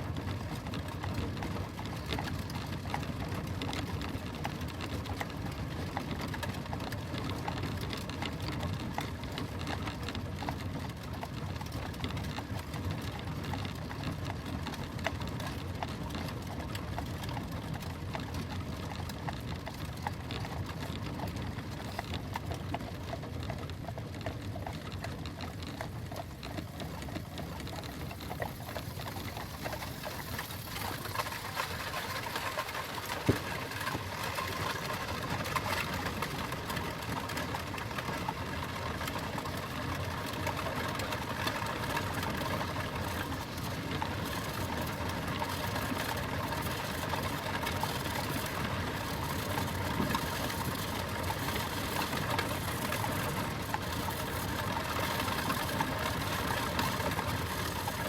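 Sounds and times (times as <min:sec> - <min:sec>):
clatter of horse hooves: 0:00.0 - 0:58.0
coach wheels and harness rattling: 0:15.3 - 0:58.0.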